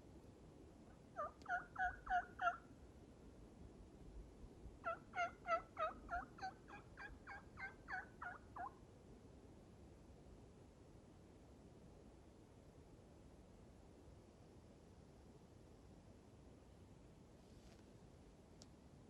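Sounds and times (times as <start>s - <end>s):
turkey yelping: 1.1s - 2.6s, 4.8s - 8.8s.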